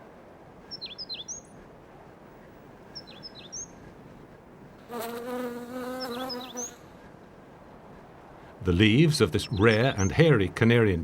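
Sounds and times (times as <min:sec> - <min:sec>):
flying insect buzzing: 0:04.8 - 0:06.8.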